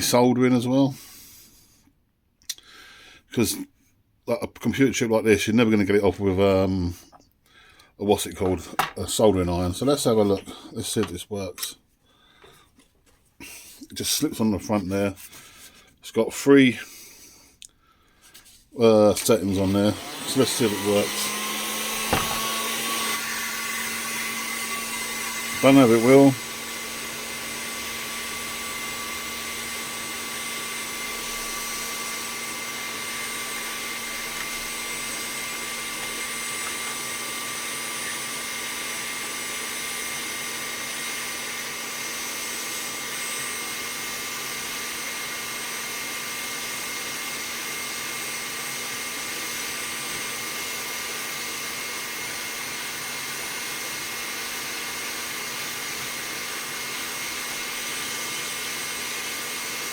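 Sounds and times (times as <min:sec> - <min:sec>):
heat gun air rush and motor whine: 0:19.2 - 0:59.9.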